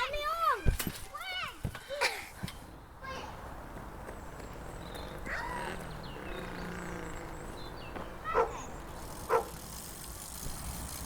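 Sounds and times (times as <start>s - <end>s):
animal calling: 5.0s - 8.7s.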